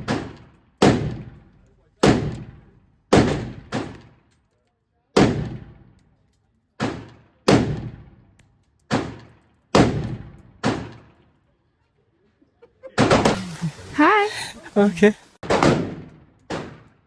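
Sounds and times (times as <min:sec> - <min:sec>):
gunshots with echo: 0:02.0 - 0:04.0.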